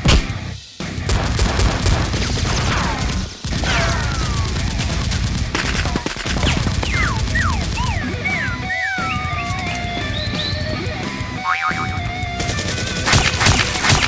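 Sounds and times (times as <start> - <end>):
rapid gunfire: 1.0 - 8.4, 12.4 - 14.0
falling whistling tones: 6.9 - 12.2.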